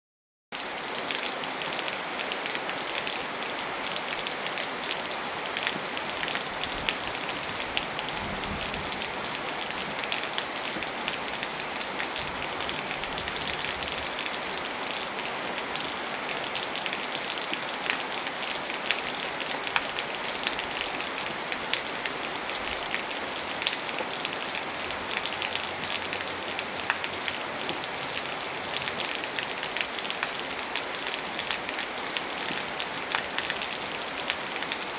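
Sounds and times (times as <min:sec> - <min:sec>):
raindrops ticking on hard surfaces: 0:00.6 - 0:34.9
steady rainfall: 0:00.6 - 0:34.9.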